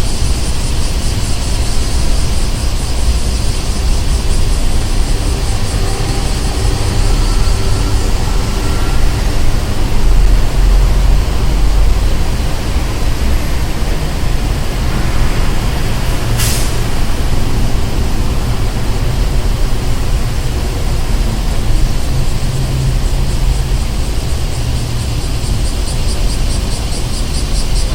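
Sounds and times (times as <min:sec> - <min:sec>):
rumble of passing vehicles: 0:00.0 - 0:27.9
sharp hiss of air: 0:14.2 - 0:19.0.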